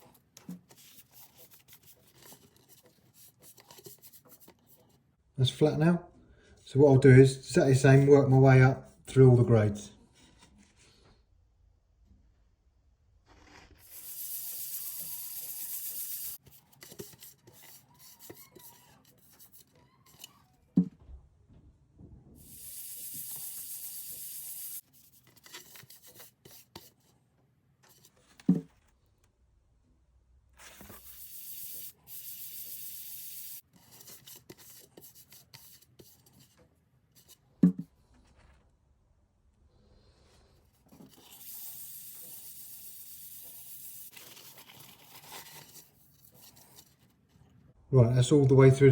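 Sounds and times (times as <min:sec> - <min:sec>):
sandpaper rubbing on drum shell: 0:13.8 - 0:20.3, 0:22.4 - 0:27.0, 0:30.6 - 0:36.3, 0:41.0 - 0:46.9.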